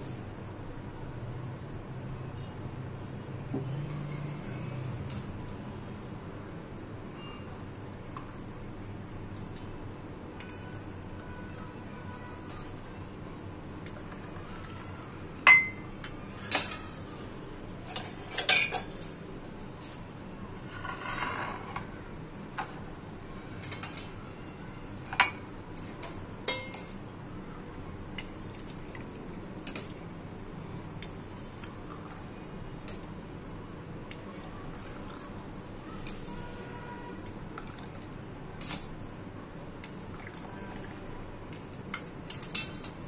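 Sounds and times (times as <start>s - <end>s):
utensils clinking against cookware: 15.5s - 15.8s, 17.8s - 19.1s, 25.1s - 27.0s, 36.0s - 36.4s, 41.6s - 43.0s.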